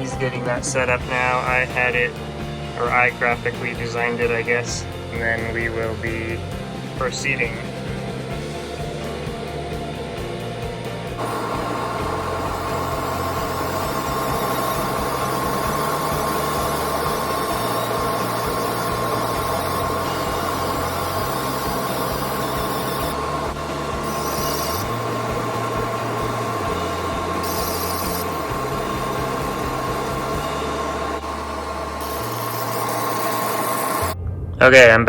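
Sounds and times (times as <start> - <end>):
background music with bass line: 0.0 - 35.0
high-pitched whine: 0.0 - 35.0.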